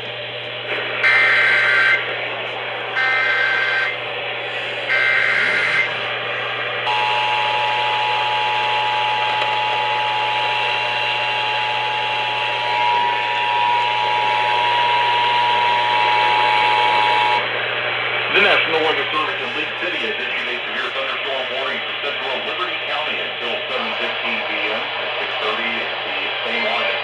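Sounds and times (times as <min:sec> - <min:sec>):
radio hiss: 0:00.0 - 0:27.0
two-tone attention signal: 0:03.0 - 0:04.0, 0:04.9 - 0:06.0, 0:06.9 - 0:17.4.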